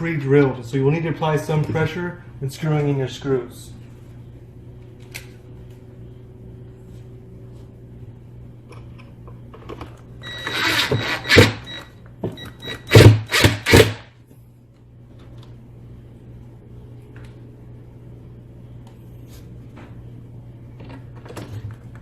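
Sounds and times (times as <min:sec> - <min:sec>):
screws driven into wood: 0:12.8 - 0:14.0.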